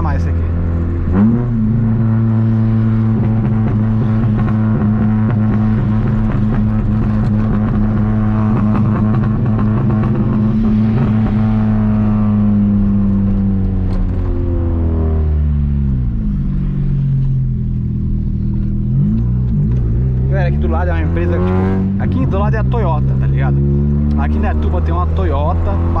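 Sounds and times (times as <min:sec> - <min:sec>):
car engine droning: 0:00.0 - 0:26.0.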